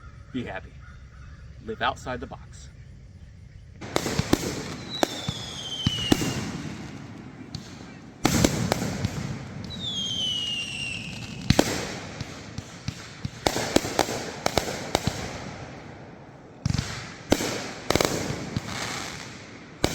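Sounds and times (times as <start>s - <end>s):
falling firework whistle: 0.0s - 15.9s
fireworks bangs and pops: 0.0s - 19.9s.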